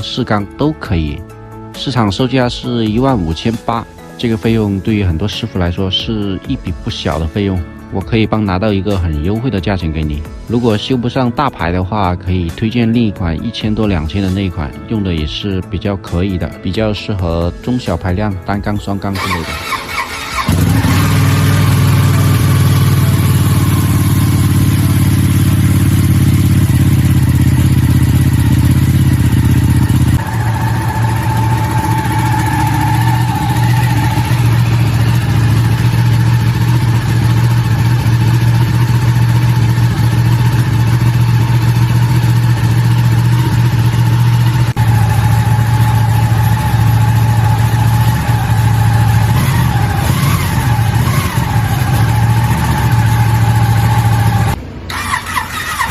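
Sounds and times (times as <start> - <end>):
motorcycle engine running: 19.2 - 55.9.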